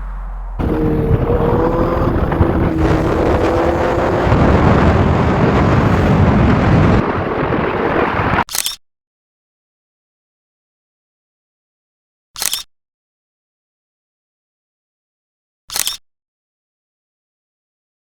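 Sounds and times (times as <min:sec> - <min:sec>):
motorcycle engine running: 0:00.0 - 0:05.8
wind rush on microphone: 0:00.0 - 0:08.4.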